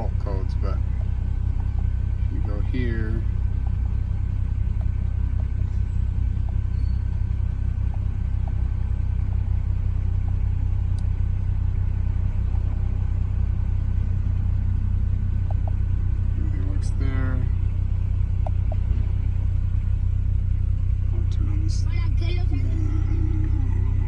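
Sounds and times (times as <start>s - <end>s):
car engine idling: 0.0s - 24.0s
steering wheel button clicks: 4.7s - 5.0s.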